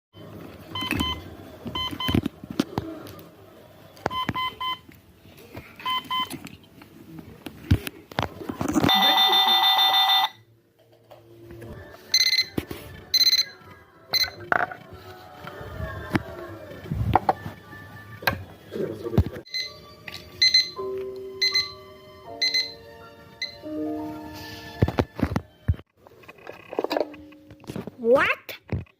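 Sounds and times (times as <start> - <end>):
alarm clock beeps: 8.8 - 10.4, 12.1 - 14.4, 19.5 - 23.7
harsh alarm buzzer: 8.9 - 10.4.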